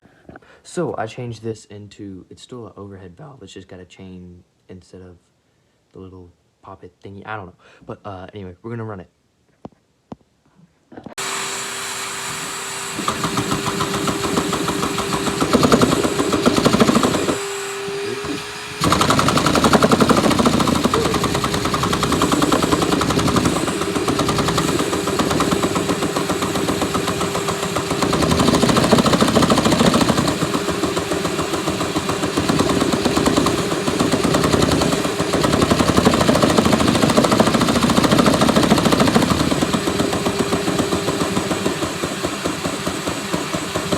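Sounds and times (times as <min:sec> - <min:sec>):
steady whine: 0:11.2 - 0:41.6
engine running: 0:11.2 - 0:43.9.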